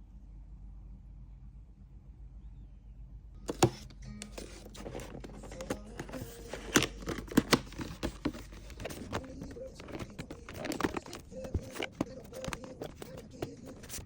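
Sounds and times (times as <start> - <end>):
packaging crinkling and tearing: 4.3 - 14.0.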